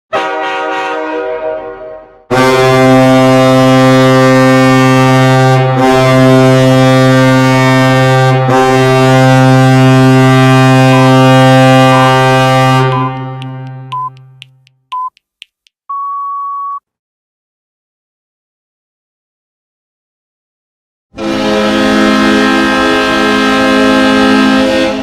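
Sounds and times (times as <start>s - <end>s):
deep air horn blasts: 0.1s - 13.9s, 21.1s - 25.0s
tone: 12.8s - 15.2s, 15.9s - 16.8s.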